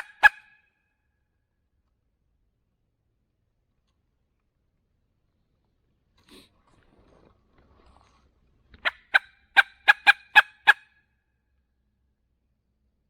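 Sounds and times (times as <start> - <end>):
turkey call notes: 0.0 - 0.8, 8.8 - 11.0.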